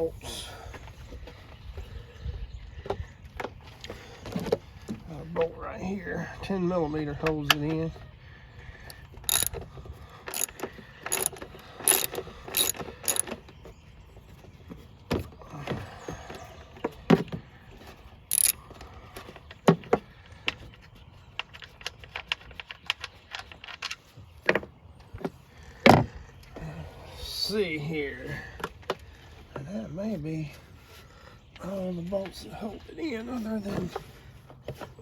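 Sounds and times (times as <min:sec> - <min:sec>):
metal tools clinking: 0:08.9 - 0:09.6, 0:10.3 - 0:13.4, 0:18.3 - 0:18.6
socket ratchet clicking: 0:08.9 - 0:09.6, 0:10.3 - 0:13.3, 0:18.3 - 0:18.6.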